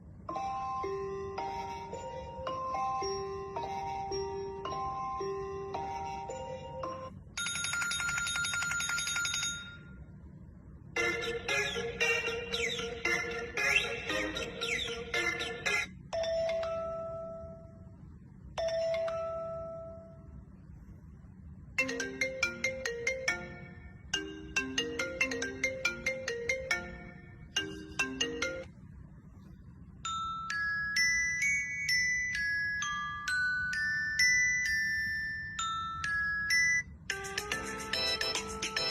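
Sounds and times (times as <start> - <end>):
tune of steady electronic tones: 0.3 - 7.2, 10.9 - 17.7
short busy alarm melody: 0.3 - 10.1, 10.9 - 17.8, 30.1 - 38.9.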